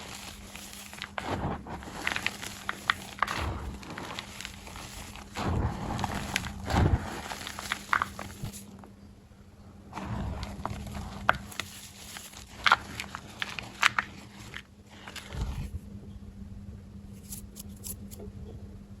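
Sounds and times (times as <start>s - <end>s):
chalk blocks being crushed: 0.0s - 8.8s, 10.0s - 15.7s.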